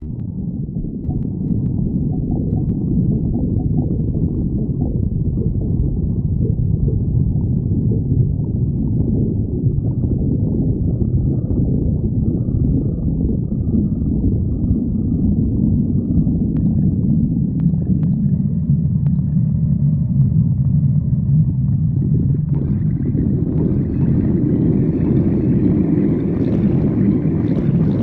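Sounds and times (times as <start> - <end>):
stomach growling: 0.0 - 28.0.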